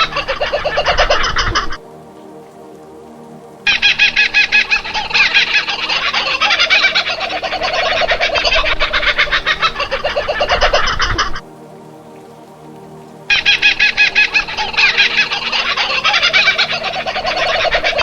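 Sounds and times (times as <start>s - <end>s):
fowl calling rapidly: 0.0s - 1.8s, 3.7s - 11.4s, 13.3s - 18.0s.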